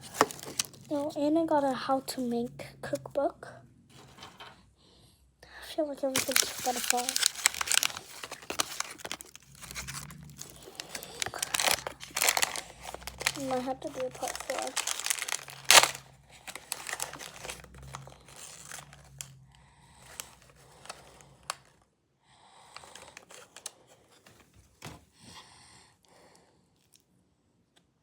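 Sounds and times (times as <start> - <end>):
packaging crinkling and rustling: 0.0 - 2.3, 6.0 - 19.4, 20.0 - 21.8, 22.7 - 25.0.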